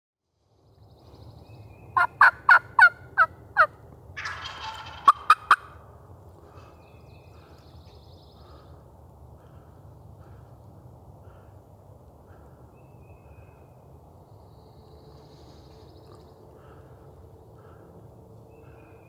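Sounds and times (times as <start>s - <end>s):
turkey gobbling: 2.0s - 5.8s
turkey yelping: 2.0s - 5.8s
distant turkey gobbling: 2.0s - 5.9s.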